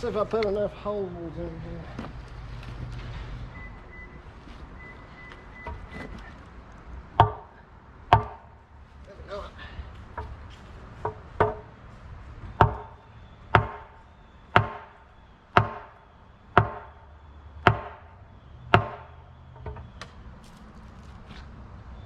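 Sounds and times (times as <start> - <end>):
hammer striking concrete: 7.2 - 7.5, 8.1 - 8.6, 11.0 - 11.7, 12.6 - 14.0, 14.6 - 15.0, 15.6 - 16.0, 16.6 - 17.0, 17.6 - 18.1, 18.7 - 19.9.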